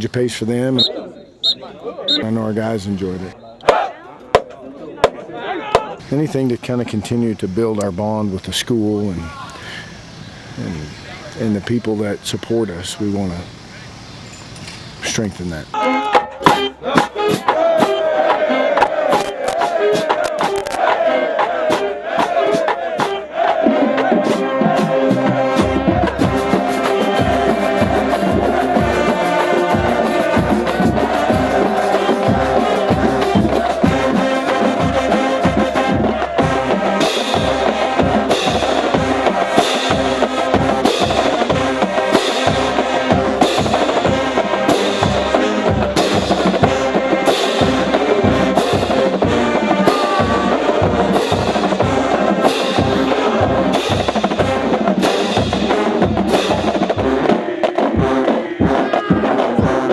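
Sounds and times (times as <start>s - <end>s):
marching band brass: 15.0s - 59.9s
steady drum beat: 15.0s - 59.9s.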